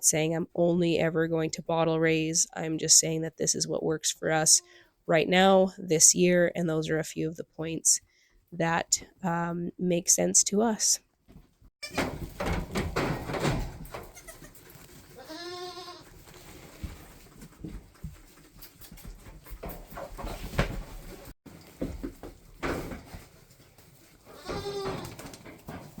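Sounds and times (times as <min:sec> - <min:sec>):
knocks and rustling: 0:11.3 - 0:15.3, 0:16.0 - 0:26.0
goat kid bleating: 0:14.1 - 0:14.6, 0:15.2 - 0:16.0, 0:24.3 - 0:25.1.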